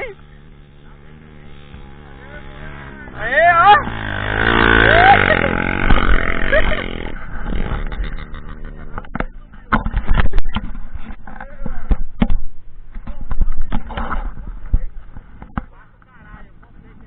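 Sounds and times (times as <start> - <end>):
dirt bike engine revving: 0.0 - 17.0
knocks and cracks of bouncing bike: 3.1 - 16.7.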